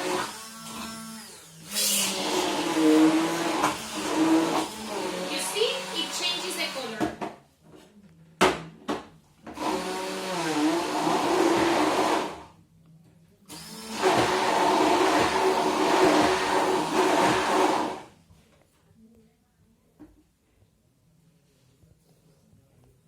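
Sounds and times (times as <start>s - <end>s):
electric mixer blending: 0.0s - 7.1s, 9.6s - 12.5s, 13.5s - 18.1s.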